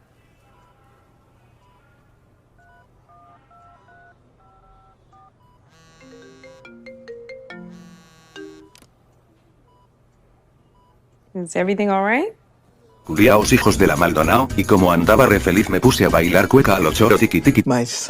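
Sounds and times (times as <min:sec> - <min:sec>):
electronic melody: 0:05.7 - 0:08.9.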